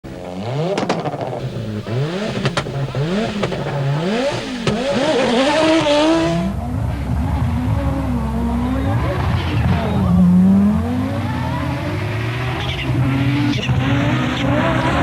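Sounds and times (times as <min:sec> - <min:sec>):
rally car engine revving: 0:00.1 - 0:15.0
engine cracks: 0:00.8 - 0:06.6
loud turbo hiss: 0:01.4 - 0:06.6.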